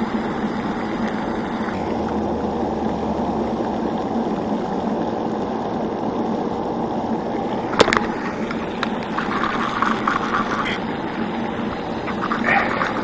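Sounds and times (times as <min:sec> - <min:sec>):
splashing water: 0:07.4 - 0:13.0.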